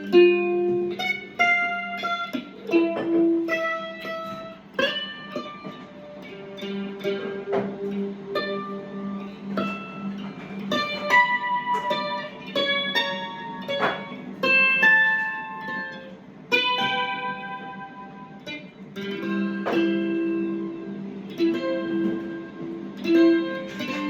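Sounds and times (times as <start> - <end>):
electric mandolin plucked notes: 0.0 - 24.0
low sustained tone: 0.0 - 24.0.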